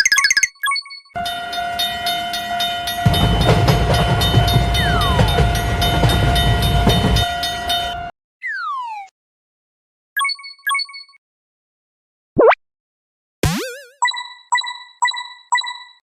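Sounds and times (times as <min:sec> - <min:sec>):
horn-like tone: 0:01.2 - 0:08.1
train rumbling past: 0:01.2 - 0:08.1.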